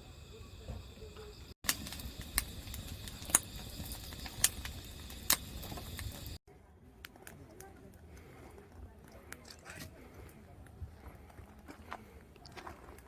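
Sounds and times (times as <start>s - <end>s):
soft fire hiss: 0.0s - 6.4s
firewood crackling and popping: 0.8s - 6.4s.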